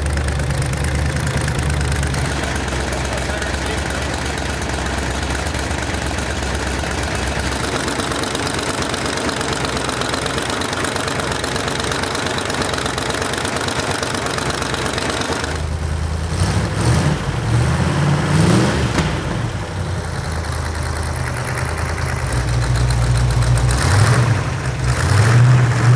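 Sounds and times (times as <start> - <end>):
engine revving: 0.0 - 25.9
engine running with exhaust leak: 0.0 - 25.9.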